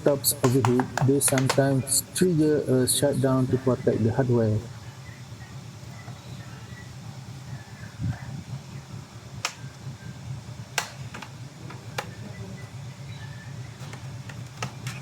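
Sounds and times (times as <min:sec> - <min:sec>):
steady low hum: 0:00.0 - 0:15.0
clicks and taps handling laptop parts: 0:00.4 - 0:01.7.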